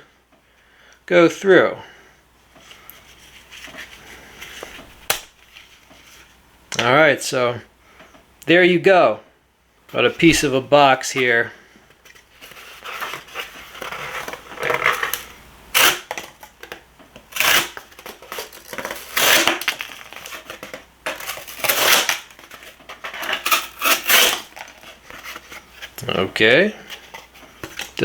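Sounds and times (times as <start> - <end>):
cardboard rustling: 2.6 - 6.4, 10.0 - 28.0.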